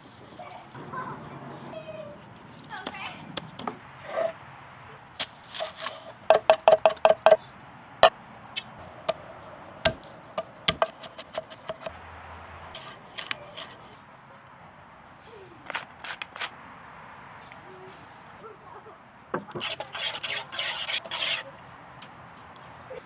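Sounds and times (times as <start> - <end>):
knife chopping on cutting board: 9.9 - 11.9.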